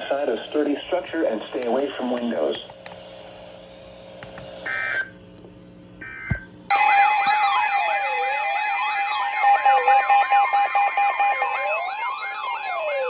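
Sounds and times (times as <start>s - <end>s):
sirens yelping and wailing: 6.1s - 13.0s.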